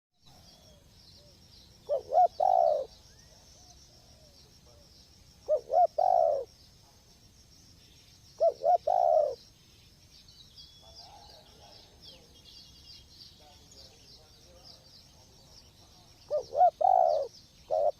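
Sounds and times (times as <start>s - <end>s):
dove cooing: 1.9s - 2.9s, 5.4s - 6.5s, 8.4s - 9.4s, 16.3s - 17.9s.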